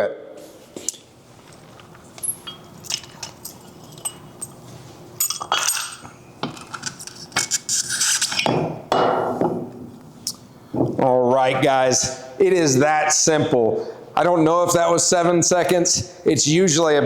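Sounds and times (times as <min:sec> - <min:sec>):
keys jangling: 0:01.4 - 0:04.6, 0:05.2 - 0:06.1
metal clinks and clanks: 0:01.4 - 0:07.2.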